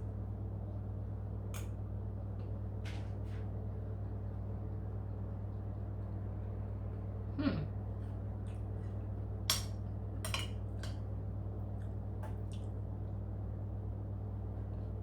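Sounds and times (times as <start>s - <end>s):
cutlery clinking against plate: 9.5s - 11.0s.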